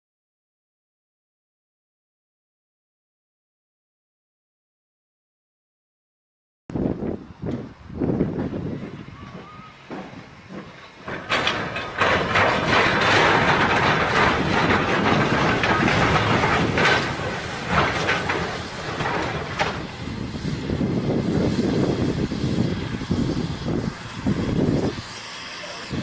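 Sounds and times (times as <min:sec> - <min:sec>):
train passing at speed: 0:06.8 - 0:26.0.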